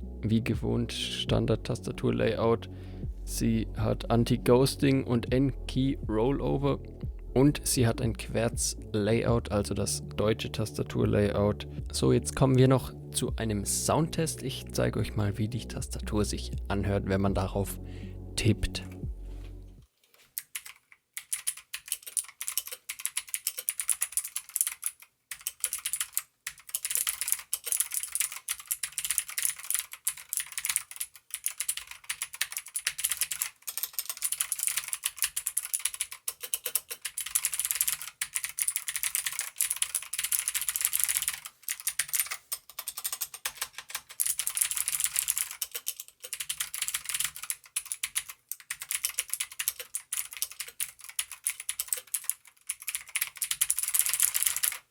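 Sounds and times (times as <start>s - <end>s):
fast typing on mechanical keyboard: 20.4s - 54.9s.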